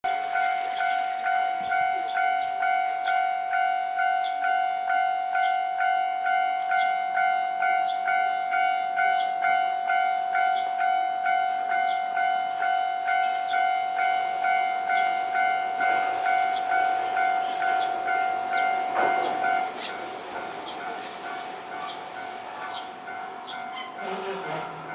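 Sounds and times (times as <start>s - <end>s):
tram rumble: 0.0s - 24.9s
electronic level crossing bell: 0.1s - 20.1s.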